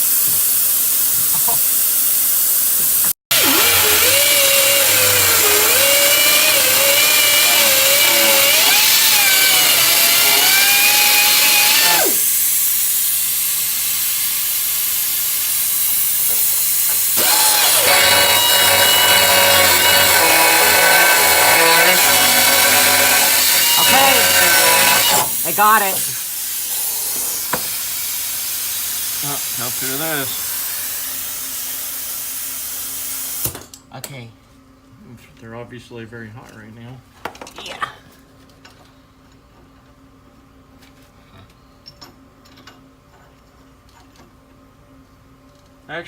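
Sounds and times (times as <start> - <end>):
pneumatic cutter cutting steel: 3.3 - 27.8.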